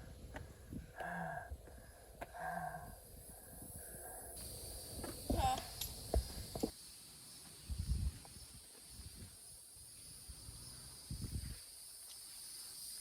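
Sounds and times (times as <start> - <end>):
wind rumble on microphone: 0.0 - 1.9, 7.6 - 9.4, 10.3 - 11.6
chorus of insects: 0.0 - 13.0.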